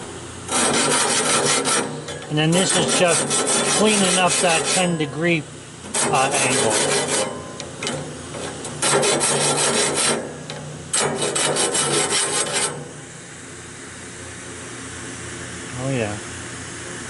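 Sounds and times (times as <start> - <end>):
low steady hum: 0.0 - 17.0
file rasping on saw blade: 0.5 - 5.1, 5.9 - 7.4, 8.8 - 10.3, 10.9 - 12.8.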